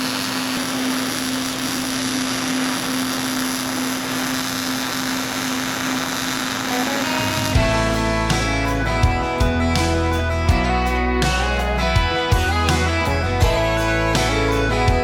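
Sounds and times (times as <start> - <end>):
power tool motor running: 0.0 - 8.3
acoustic guitar music: 6.8 - 15.0.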